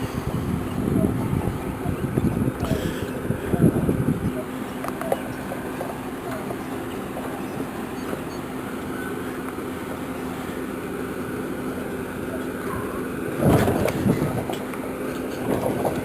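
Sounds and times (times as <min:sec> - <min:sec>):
vehicle engine rumbling: 0:00.0 - 0:16.0
clatter: 0:13.4 - 0:16.0.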